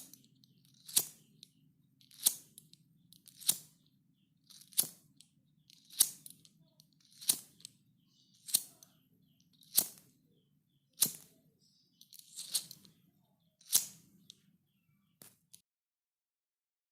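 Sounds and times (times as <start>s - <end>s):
lighter clicking: 5.9s - 6.3s, 8.4s - 8.9s, 9.7s - 10.0s, 13.6s - 14.4s.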